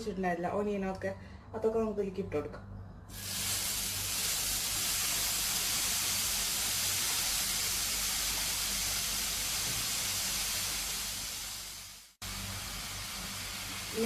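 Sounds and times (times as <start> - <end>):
vegetables sizzling in hot oil: 3.1 - 14.0.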